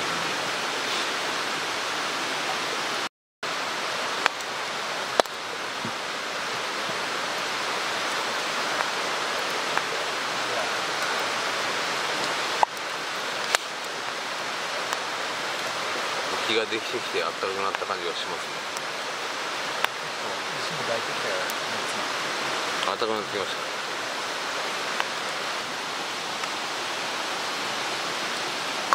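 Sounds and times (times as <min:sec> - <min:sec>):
mountain stream rushing: 0:00.0 - 0:28.9
sharp clicks or pops: 0:05.1 - 0:06.0.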